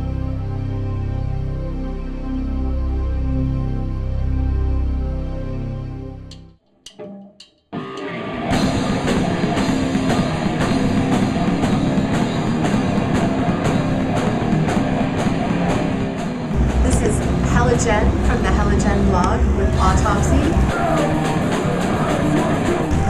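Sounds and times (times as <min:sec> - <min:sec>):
heavy metal music: 0:00.0 - 0:23.0
sharp hits: 0:07.8 - 0:23.0.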